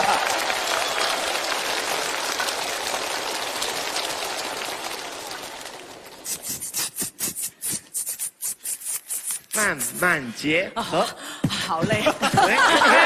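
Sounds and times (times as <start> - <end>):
audience applause: 0.0 - 6.5
beatboxing mouth clicks and hisses: 6.2 - 10.3.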